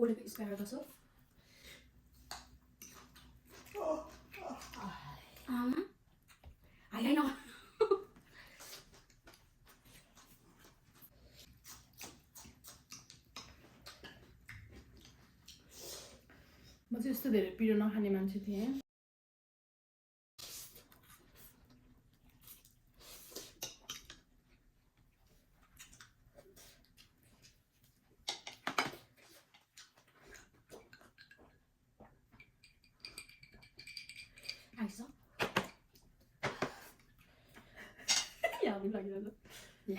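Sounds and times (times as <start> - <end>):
chewing mouth noises: 8.6 - 15.8, 20.4 - 28.0
utensils clicking and tapping: 32.4 - 34.8.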